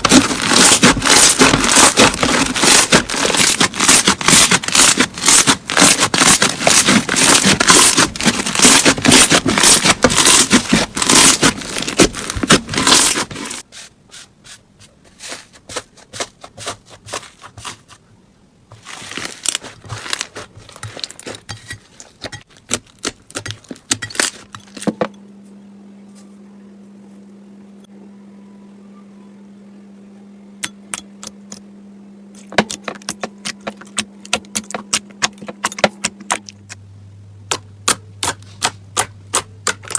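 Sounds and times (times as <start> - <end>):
slime crackling and popping: 0.0 - 13.3
steady low hum: 0.0 - 39.9.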